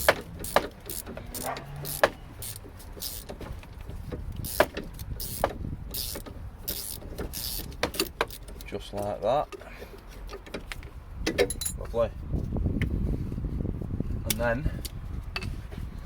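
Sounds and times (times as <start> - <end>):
ratchet spanner clicking: 0.0 - 8.7.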